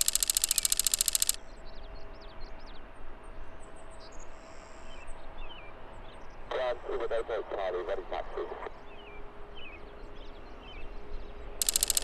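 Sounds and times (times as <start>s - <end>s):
rapid pulsing buzz: 0.0s - 1.4s, 11.6s - 12.0s
small birds chirping: 0.0s - 1.4s, 11.6s - 12.0s
faint outdoor background: 0.0s - 12.0s.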